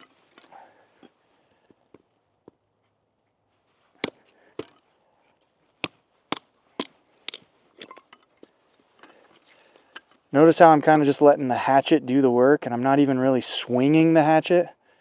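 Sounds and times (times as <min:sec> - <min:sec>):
hatchet chopping wood: 0:04.0 - 0:04.9, 0:05.8 - 0:08.1.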